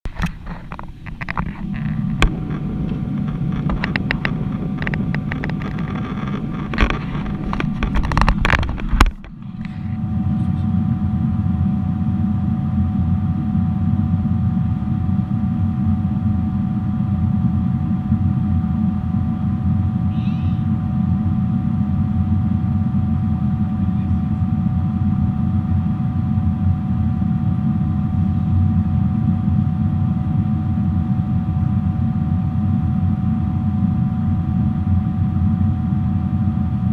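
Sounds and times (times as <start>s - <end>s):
airliner cabin engine drone: 0.0s - 36.9s
steady whining tones: 0.0s - 36.9s
clattering and rustling: 0.1s - 9.9s.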